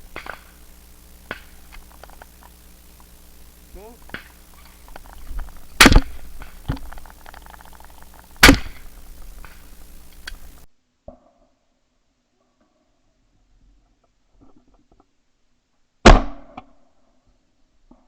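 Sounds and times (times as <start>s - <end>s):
shotgun shots: 0.0s - 10.6s
faint sharp pops: 0.0s - 10.7s.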